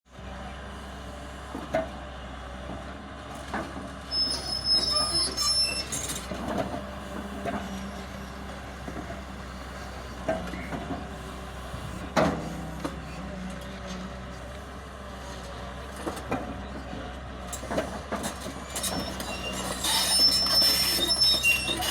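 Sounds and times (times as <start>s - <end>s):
excavator diesel engine running: 0.1s - 21.9s
high-pitched metal squeal: 4.1s - 6.2s, 18.6s - 21.9s.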